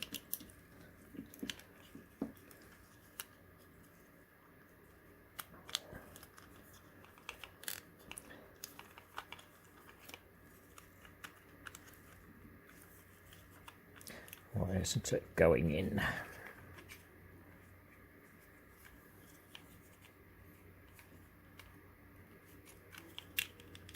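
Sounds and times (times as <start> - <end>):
plastic parts clicking and tapping: 5.3 - 14.5, 22.6 - 23.9.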